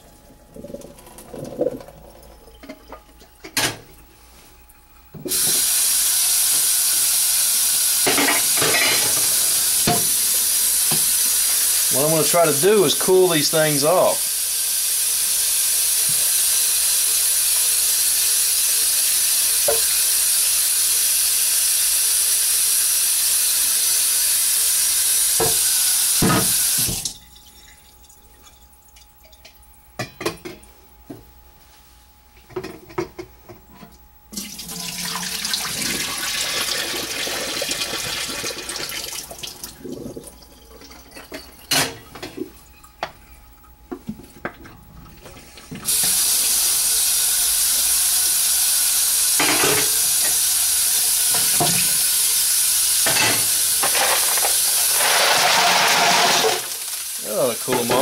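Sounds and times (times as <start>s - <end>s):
faucet running into sink: 5.3s - 27.6s, 34.3s - 42.5s, 45.6s - 58.0s.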